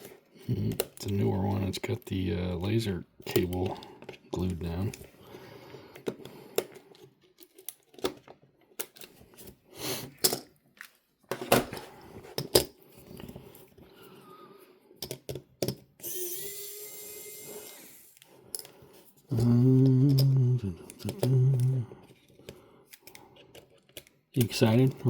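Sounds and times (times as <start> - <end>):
small tools clicking and tapping: 15.0 - 16.2, 17.7 - 24.7.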